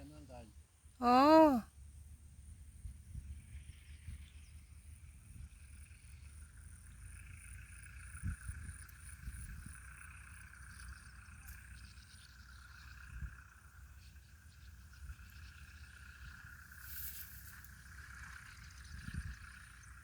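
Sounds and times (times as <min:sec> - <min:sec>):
pulsed insect chirp: 0:03.6 - 0:20.0
insects trilling: 0:04.8 - 0:20.0.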